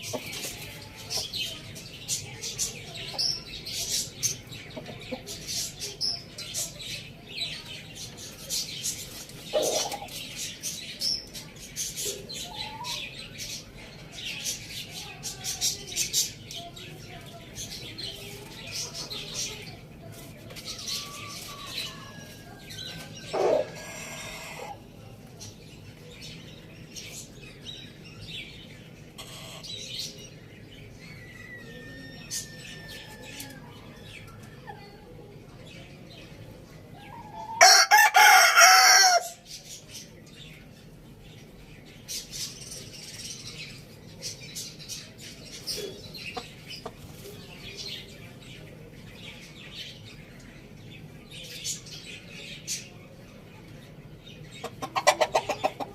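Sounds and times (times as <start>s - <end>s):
chickens clucking: 0.0s - 28.0s, 28.8s - 55.9s
rooster crowing: 37.6s - 39.4s.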